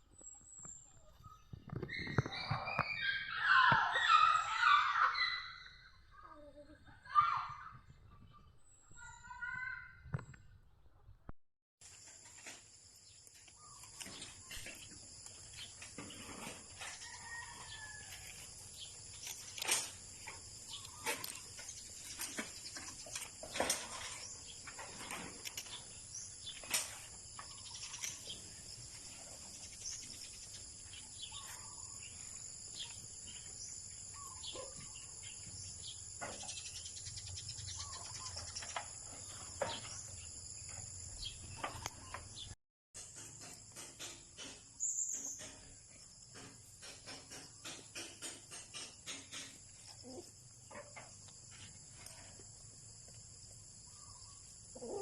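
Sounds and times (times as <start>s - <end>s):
bird calls: 0.1s - 10.4s, 13.2s - 42.6s, 44.0s - 52.4s, 53.9s - 55.0s
insect chorus: 11.8s - 42.2s, 43.0s - 55.0s.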